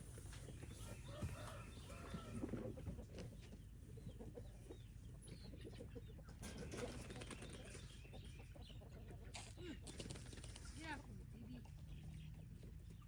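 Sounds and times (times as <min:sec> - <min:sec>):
chickens clucking: 0:00.2 - 0:09.5.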